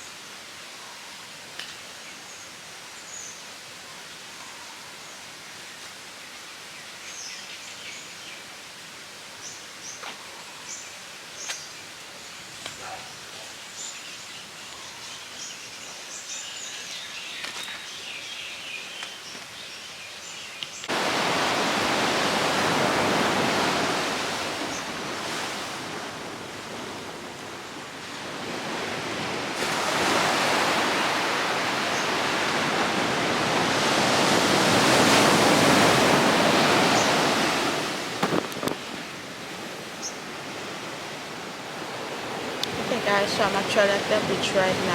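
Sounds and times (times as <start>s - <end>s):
birds chirping: 9.4s - 20.9s, 30.6s - 37.6s, 38.2s - 44.9s
sea surf washing in: 20.9s - 44.9s.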